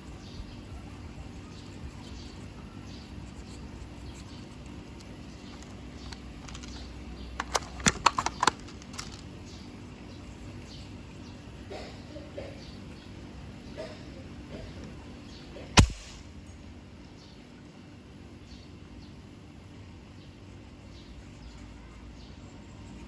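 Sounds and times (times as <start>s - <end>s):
steady low hum: 0.0s - 23.0s
sharp clicks: 15.8s - 16.3s.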